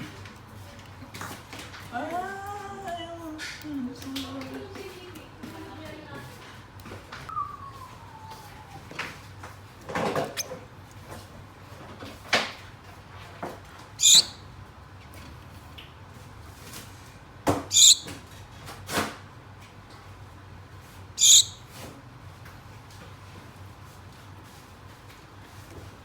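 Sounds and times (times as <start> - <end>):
finches calling: 14.0 - 14.4, 17.7 - 18.1, 21.2 - 21.6.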